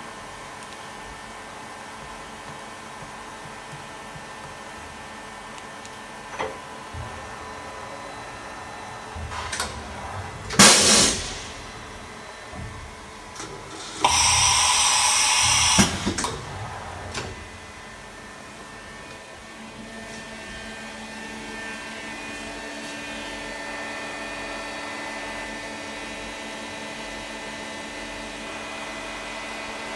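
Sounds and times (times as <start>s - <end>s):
machine whine: 6.3s - 19.3s
machine hiss: 9.1s - 17.5s
loud machine burst: 9.3s - 12.4s, 13.7s - 17.2s.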